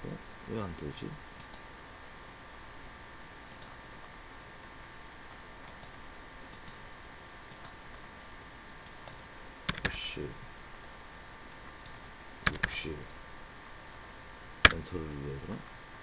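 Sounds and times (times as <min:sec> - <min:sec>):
background hiss and hum: 0:00.0 - 0:16.0
computer mouse clicks: 0:01.4 - 0:01.7, 0:03.5 - 0:03.8, 0:05.6 - 0:06.8, 0:07.5 - 0:07.8, 0:08.8 - 0:10.1, 0:11.5 - 0:12.9, 0:14.6 - 0:14.9.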